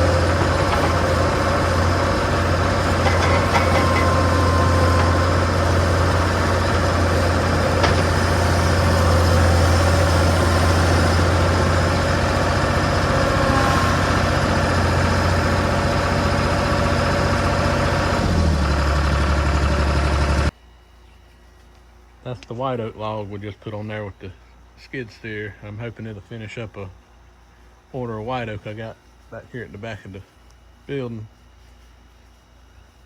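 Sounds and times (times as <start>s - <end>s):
diesel engine humming: 0.0s - 20.5s.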